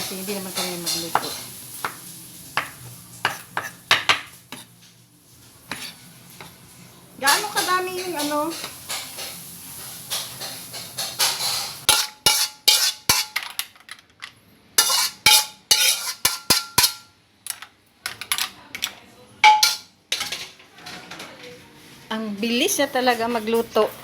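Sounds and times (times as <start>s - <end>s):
kitchen utensils clattering: 0.0s - 1.5s, 7.2s - 9.4s, 10.0s - 21.5s.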